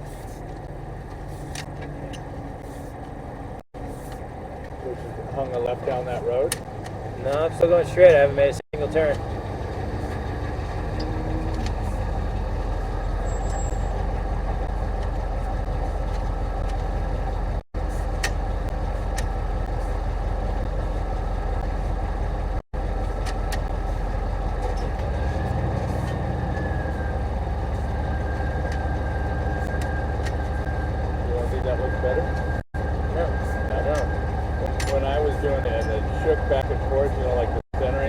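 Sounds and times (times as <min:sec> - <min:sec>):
vehicle engine rumble: 0:00.0 - 0:38.0.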